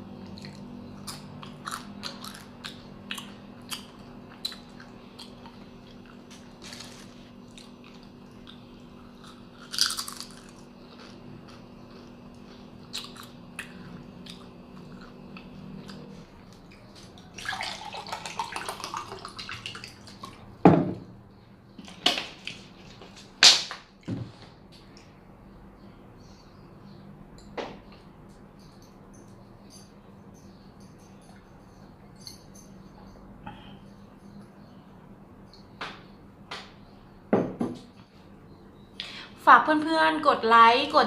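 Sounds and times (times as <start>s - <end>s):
chips crunching and chewing: 0.2s - 16.6s
loud sharp crunches: 9.3s - 11.2s.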